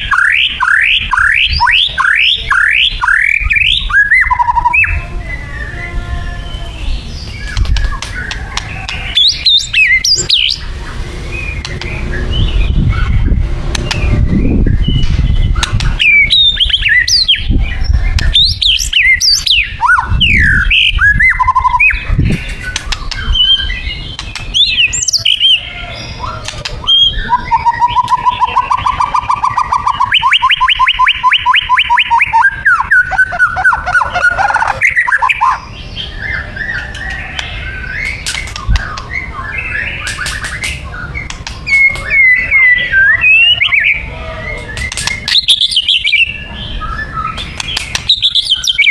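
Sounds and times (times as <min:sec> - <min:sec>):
songbird singing whistles: 0:00.0 - 0:10.6, 0:11.4 - 0:48.9
sharp clicks: 0:11.6 - 0:11.9, 0:13.7 - 0:14.1, 0:22.4 - 0:23.3, 0:24.2 - 0:24.6, 0:36.9 - 0:39.2, 0:40.0 - 0:42.1, 0:44.8 - 0:45.6, 0:47.4 - 0:48.4.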